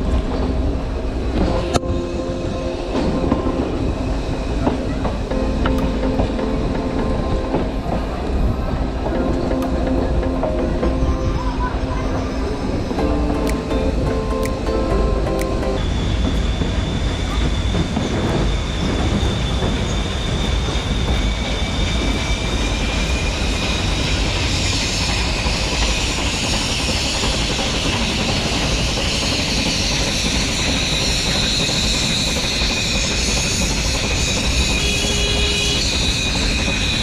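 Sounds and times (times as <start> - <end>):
train wheels rumbling on rails: 0.0 - 37.0
high-pitched wheel squeal: 15.8 - 37.0.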